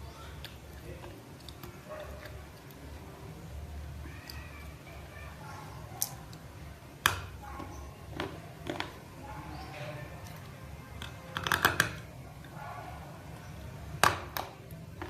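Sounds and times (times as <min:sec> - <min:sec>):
clay chunks crunching when chewed: 0:00.2 - 0:03.1.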